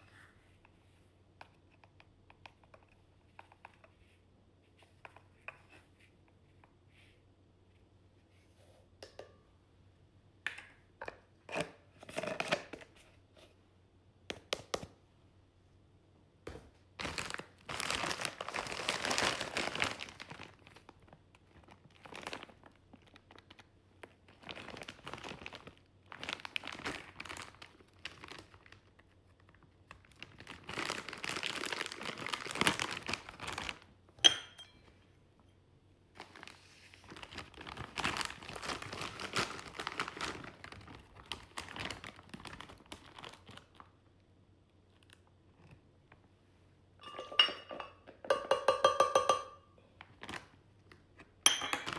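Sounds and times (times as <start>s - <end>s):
crinkly packaging rustling: 17.0s - 34.0s, 36.1s - 44.0s, 50.0s - 51.9s.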